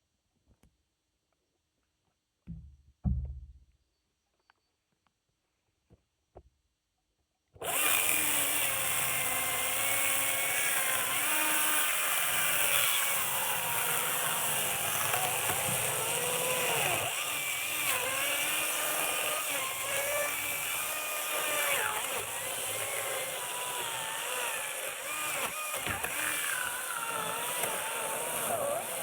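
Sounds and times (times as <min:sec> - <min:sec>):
electric chainsaw cutting wood: 0:07.6 - 0:29.0.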